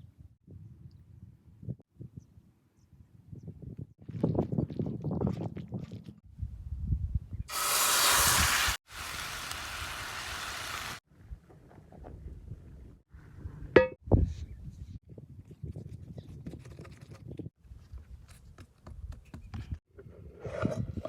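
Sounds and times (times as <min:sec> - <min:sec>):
food sizzling in a hot pan: 0:07.5 - 0:11.0.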